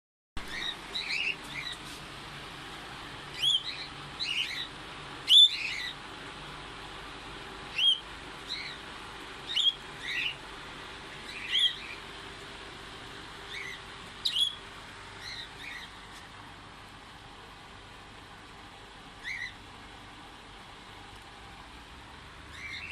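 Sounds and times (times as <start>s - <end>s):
parrots chirping: 0.4s - 1.9s, 3.3s - 6.1s, 7.7s - 10.4s, 11.2s - 12.1s, 13.4s - 16.1s, 19.2s - 19.6s, 22.5s - 22.9s.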